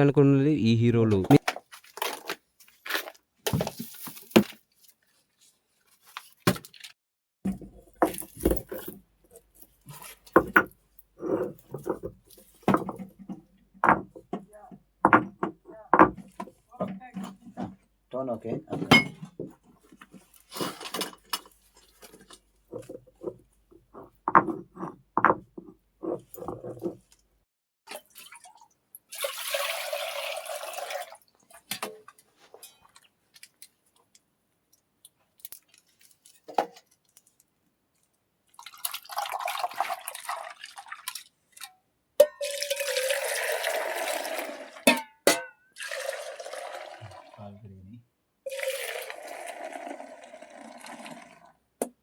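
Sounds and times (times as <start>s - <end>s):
liquid splashing and pouring: 27.9s - 31.6s, 38.5s - 41.6s, 45.8s - 47.4s, 48.5s - 51.5s.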